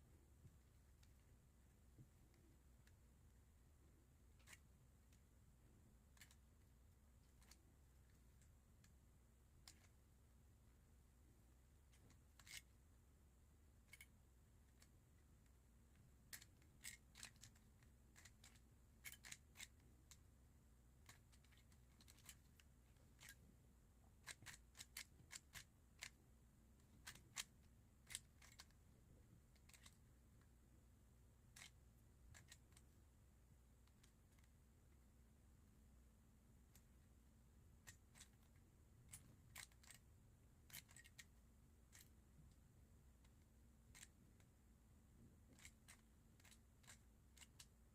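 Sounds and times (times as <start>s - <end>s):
puzzle cube layers clicking: 16.2s - 20.2s, 21.0s - 23.4s, 24.1s - 26.2s, 26.8s - 28.8s, 37.7s - 42.2s, 45.4s - 47.8s.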